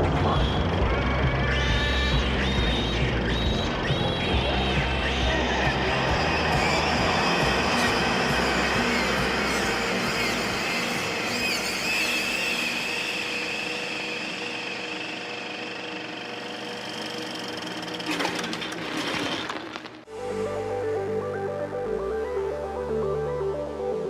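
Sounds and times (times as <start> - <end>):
machinery clattering: 0.0 - 15.9, 16.8 - 20.0
high wavering tones: 0.6 - 18.0.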